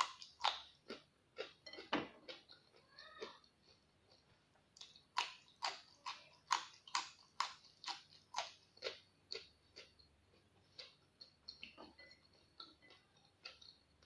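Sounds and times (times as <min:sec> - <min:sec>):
crunchy chewing of vegetables: 0:00.0 - 0:14.0.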